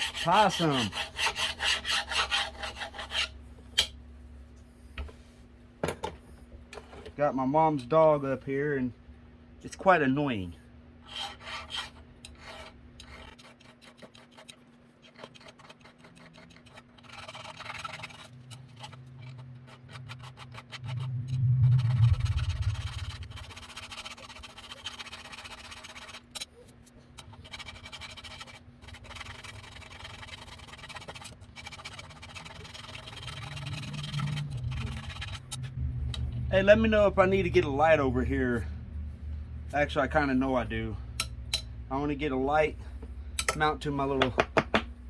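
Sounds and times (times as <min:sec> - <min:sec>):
hand file rasping: 0:00.0 - 0:03.4, 0:11.0 - 0:21.2, 0:22.2 - 0:26.5, 0:27.2 - 0:35.6.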